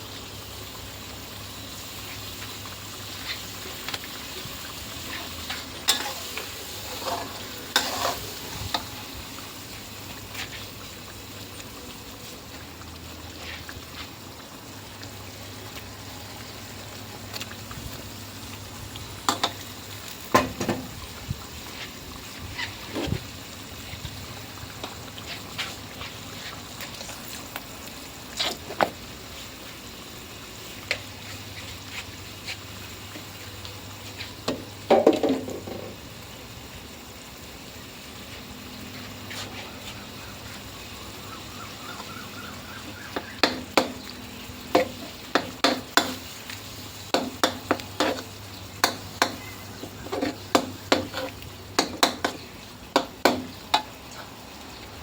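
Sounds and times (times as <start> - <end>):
curry sizzling in a pan: 0.0 - 55.0
utensil knocking against pan: 53.0 - 53.5.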